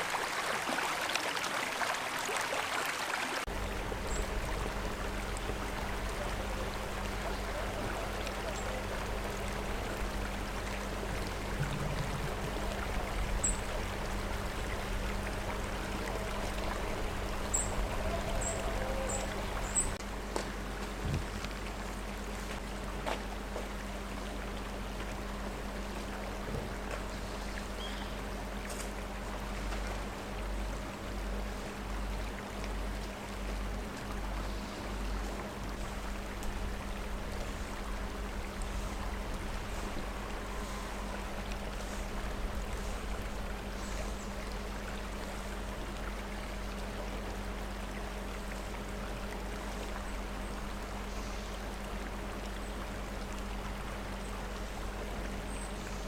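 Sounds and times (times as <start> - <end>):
river water rushing: 0.0 - 56.0
low throbbing rumble: 3.5 - 22.8.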